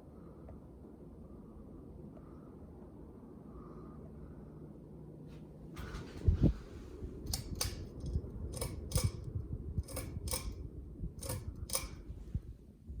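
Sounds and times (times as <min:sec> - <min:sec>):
low rumble: 0:05.7 - 0:13.0
pull-chain switch clicking: 0:07.3 - 0:10.6, 0:11.2 - 0:12.2.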